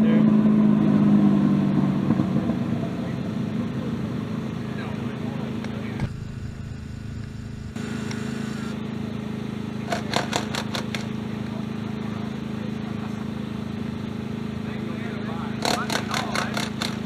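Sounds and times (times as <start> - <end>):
engine idling: 3.0 - 17.0.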